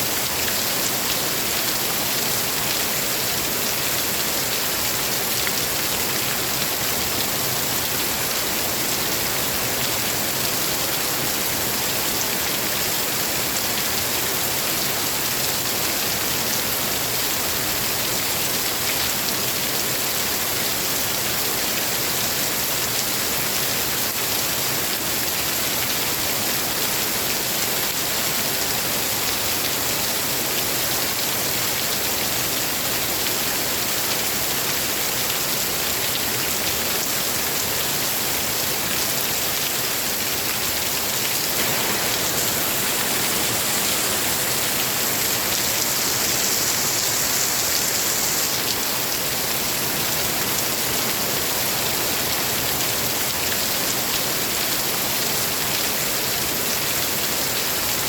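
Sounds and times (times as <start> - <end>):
heavy rain pattering: 37.6 - 55.8.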